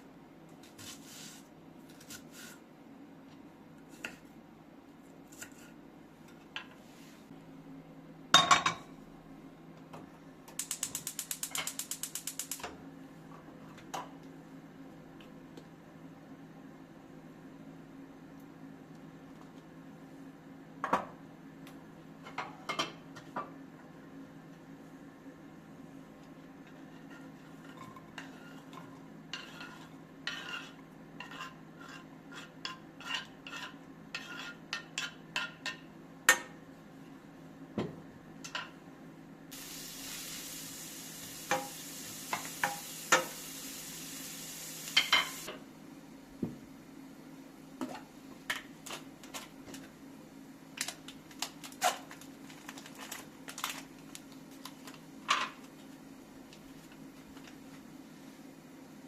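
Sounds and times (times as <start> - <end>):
steady hiss: 10.6 - 12.6, 39.5 - 45.5
utensils clinking against pots: 44.9 - 45.5.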